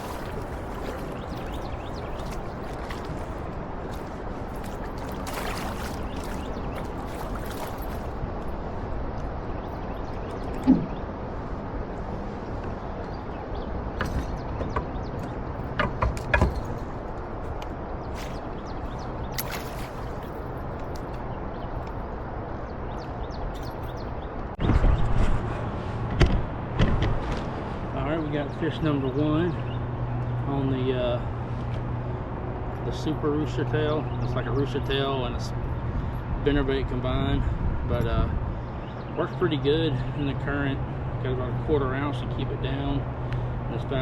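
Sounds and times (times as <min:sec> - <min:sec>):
river current rushing: 0:00.0 - 0:09.0.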